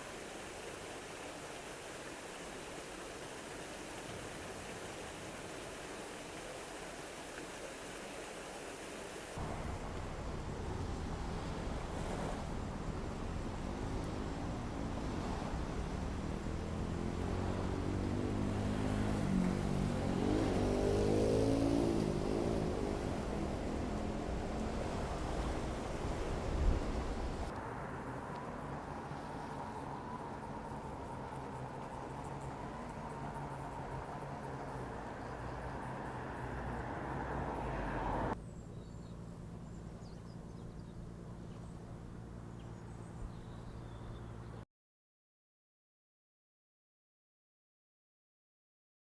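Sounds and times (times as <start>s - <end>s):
background engine rumble: 9.4s - 44.6s
vehicle engine accelerating: 13.3s - 27.8s
birds chirping: 38.4s - 44.6s.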